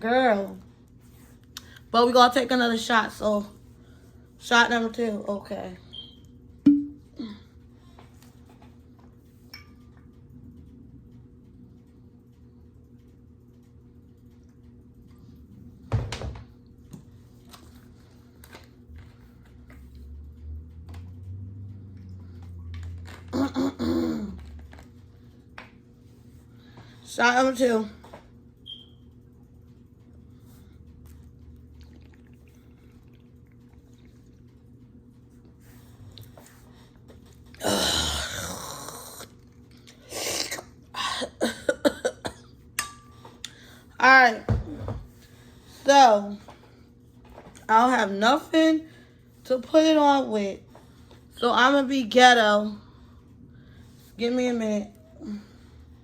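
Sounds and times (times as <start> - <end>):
woman coughing and gasping: 23.4 - 24.5, 40.2 - 42.6.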